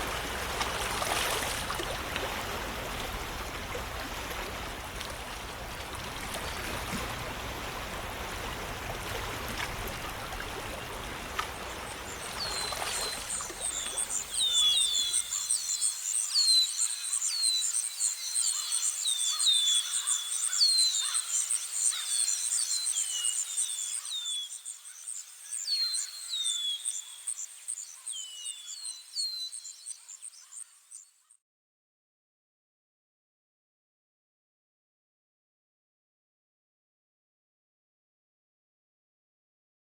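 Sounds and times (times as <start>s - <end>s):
running water rushing: 0.0s - 15.4s
bird chirps: 12.0s - 21.2s.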